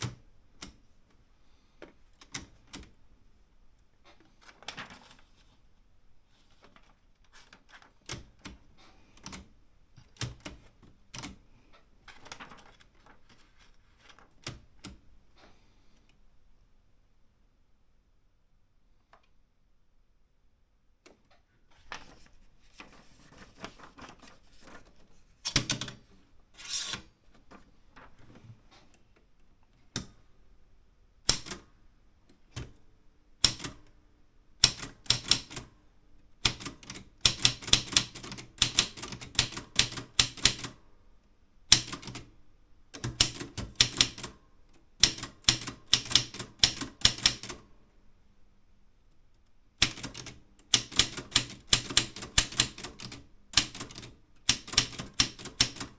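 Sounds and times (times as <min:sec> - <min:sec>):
typewriter keystrokes: 0:07.7 - 0:11.4, 0:25.4 - 0:26.0, 0:31.3 - 0:31.7, 0:32.5 - 0:32.8, 0:33.4 - 0:33.9, 0:34.6 - 0:35.7, 0:36.4 - 0:40.8, 0:41.7 - 0:42.3, 0:43.0 - 0:44.4, 0:45.0 - 0:47.7, 0:49.8 - 0:55.9.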